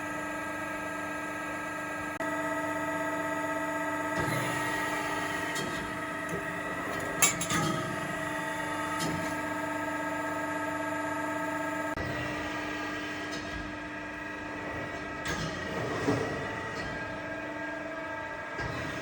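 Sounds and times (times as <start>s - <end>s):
hydraulic press humming: 2.7s - 19.0s
metallic clanks and clicks: 5.6s - 8.0s.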